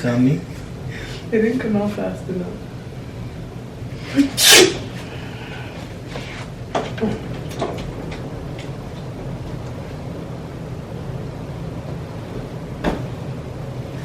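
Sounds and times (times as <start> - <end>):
woman sneezing: 4.0 - 4.9.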